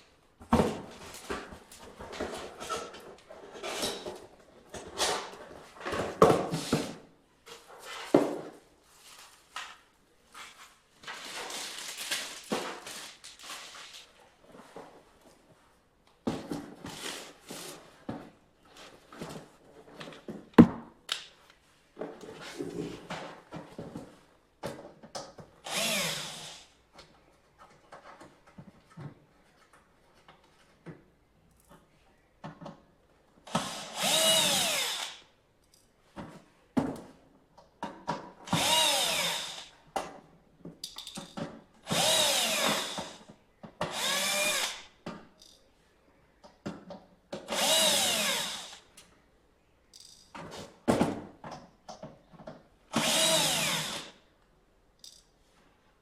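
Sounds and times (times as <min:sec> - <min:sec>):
cordless electric screwdriver running: 0:25.7 - 0:26.7, 0:33.5 - 0:35.2, 0:38.6 - 0:39.7, 0:41.9 - 0:43.2, 0:43.9 - 0:44.8, 0:47.5 - 0:48.8, 0:53.0 - 0:54.2.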